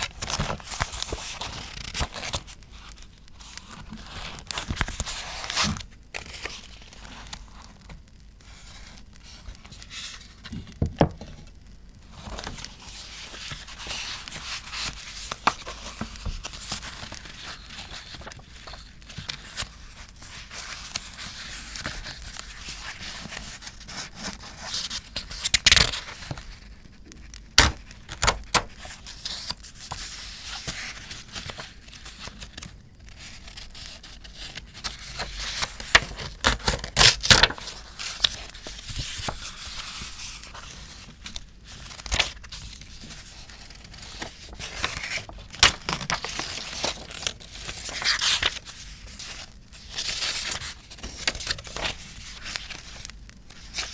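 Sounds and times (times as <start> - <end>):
paper tearing and crinkling: 12.1 - 26.7, 27.6 - 53.9.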